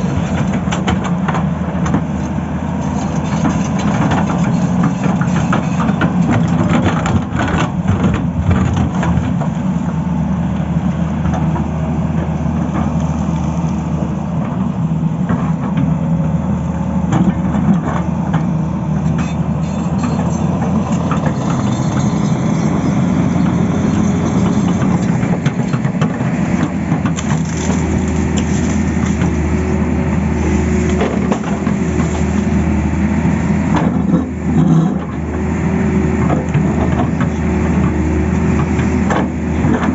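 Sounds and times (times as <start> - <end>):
excavator diesel engine running: 0.0 - 39.9
digging knocks and crunches: 24.8 - 33.0.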